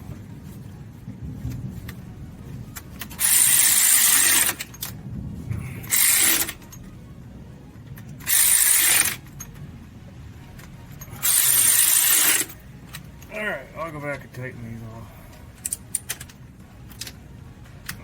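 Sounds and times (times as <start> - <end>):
power tool driving bolts: 3.1 - 4.9, 5.8 - 6.7, 8.2 - 9.2, 11.0 - 12.6.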